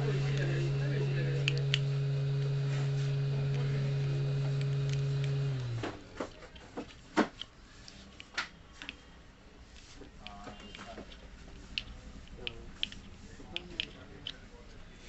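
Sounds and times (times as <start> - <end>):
low electrical hum: 0.0 - 15.0
sharp clicks and taps: 0.2 - 9.0.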